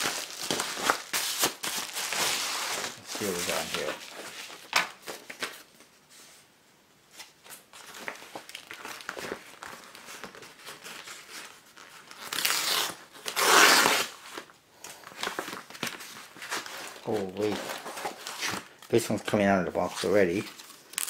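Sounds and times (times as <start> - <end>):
packaging rustling and crinkling: 0.0 - 5.9, 7.2 - 21.0
loud tearing rips: 12.1 - 14.2.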